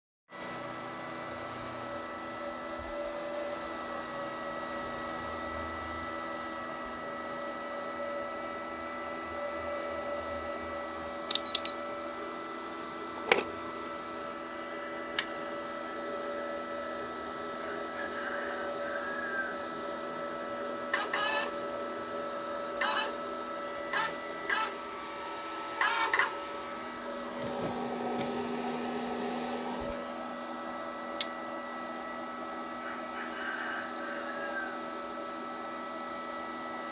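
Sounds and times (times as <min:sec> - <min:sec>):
electrical machine hum: 0:00.4 - 0:36.9
sharp clicks: 0:21.0 - 0:21.5, 0:22.8 - 0:23.1, 0:23.9 - 0:24.8, 0:25.8 - 0:26.4.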